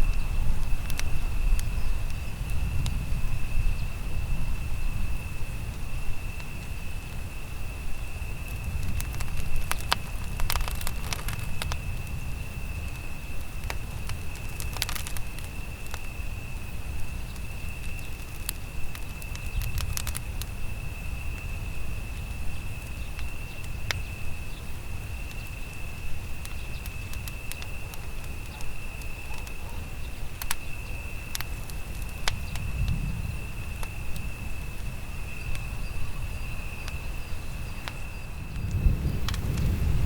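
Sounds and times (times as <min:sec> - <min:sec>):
campfire crackling and popping: 0:00.0 - 0:40.0
low fire rumble: 0:00.0 - 0:40.0.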